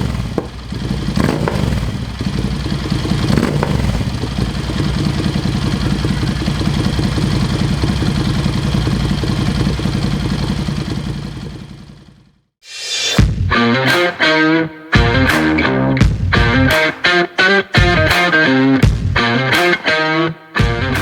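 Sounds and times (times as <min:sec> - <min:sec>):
motorcycle engine running: 0:00.0 - 0:12.5.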